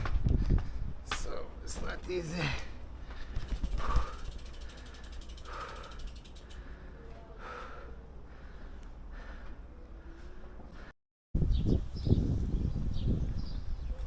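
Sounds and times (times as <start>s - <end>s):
person breathing heavily: 2.3s - 11.0s
bicycle freewheel ticking: 3.3s - 6.9s.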